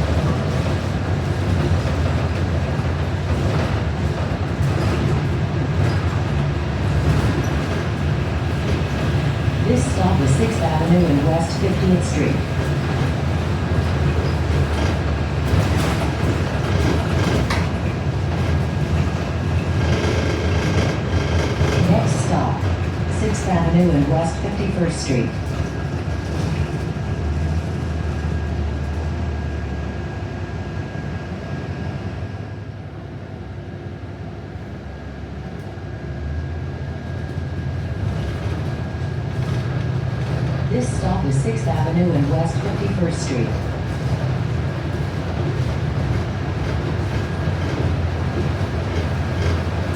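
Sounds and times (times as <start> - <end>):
clacks and rattles: 0.0 - 9.4, 12.6 - 23.0, 43.6 - 49.9
bus engine and road rumble: 0.0 - 49.9.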